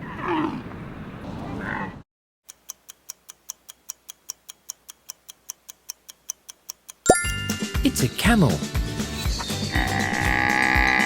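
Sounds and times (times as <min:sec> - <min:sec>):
clock ticking: 0:02.5 - 0:07.2
camel call: 0:09.7 - 0:11.0.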